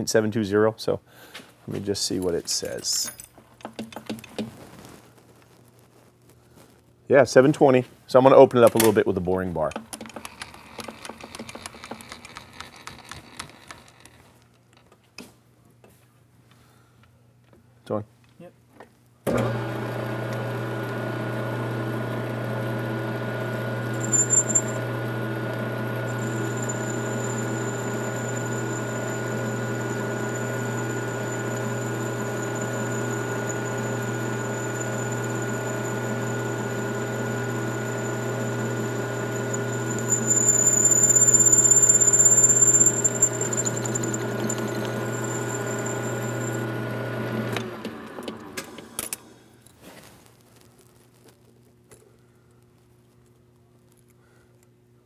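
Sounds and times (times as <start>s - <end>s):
metal lathe motor hum: 19.4s - 47.6s
high-pitched cutting squeal: 23.9s - 24.9s, 26.0s - 46.7s.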